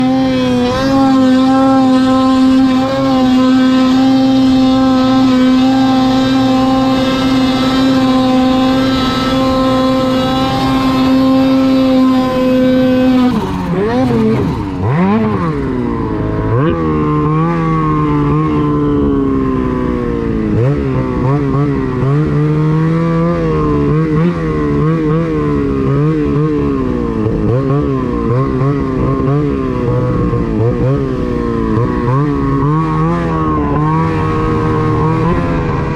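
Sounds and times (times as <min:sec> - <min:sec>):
snowmobile engine revving: 0:00.0 - 0:35.9.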